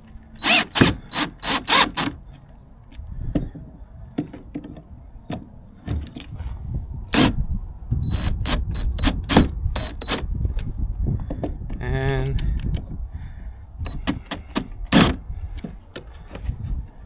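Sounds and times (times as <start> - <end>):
screws scraping into plastic hull: 0.4 - 2.2, 13.9 - 15.2.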